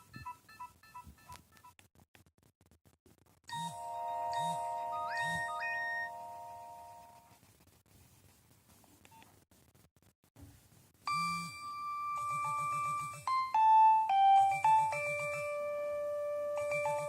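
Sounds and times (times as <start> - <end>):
mobile phone ringtone: 3.5 - 7.2, 11.1 - 17.0.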